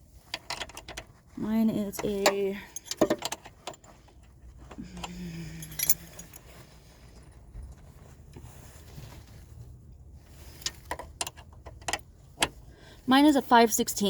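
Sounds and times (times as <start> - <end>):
metal hand tools clinking: 5.3 - 6.4.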